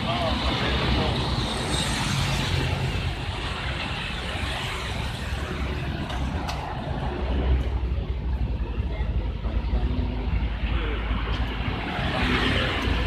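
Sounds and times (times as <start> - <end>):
cars and trucks rumbling past: 0.0 - 13.0.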